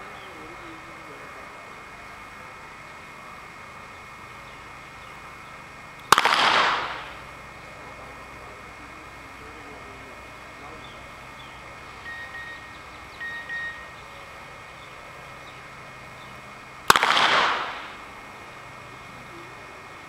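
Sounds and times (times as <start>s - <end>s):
revolver shot with echo: 6.0s - 7.4s, 16.9s - 18.1s.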